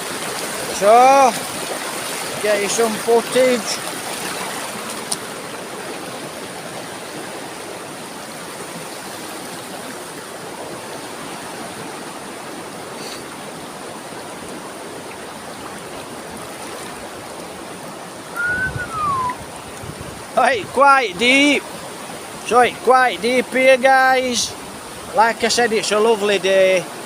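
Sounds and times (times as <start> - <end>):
waterfall and river rushing: 0.0 - 27.0.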